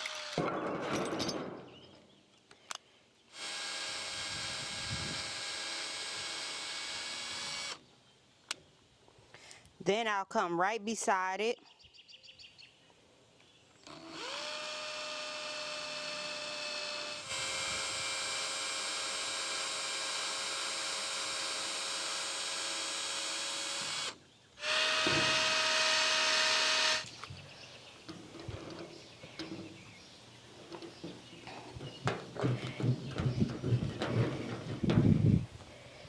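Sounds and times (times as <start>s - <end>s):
electric drill whining: 0.0s - 0.4s, 3.3s - 7.8s, 13.8s - 27.1s.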